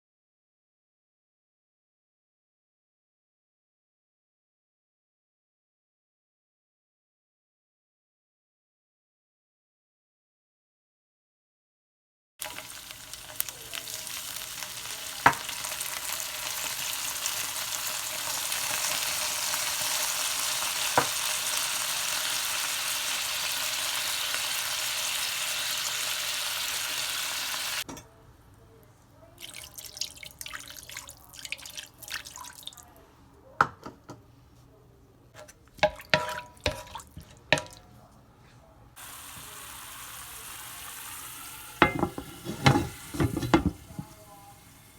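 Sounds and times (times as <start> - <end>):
cooking hiss: 12.4 - 27.9, 39.0 - 44.9
utensils clinking and knocking: 41.8 - 44.1.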